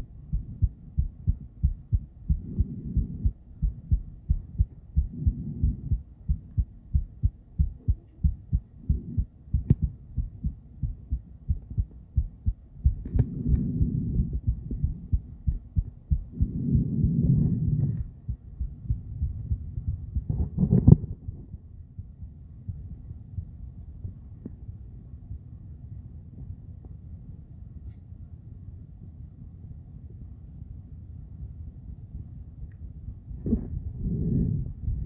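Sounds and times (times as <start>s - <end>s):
doppler heartbeat thumps: 0.0s - 21.2s, 33.4s - 35.0s.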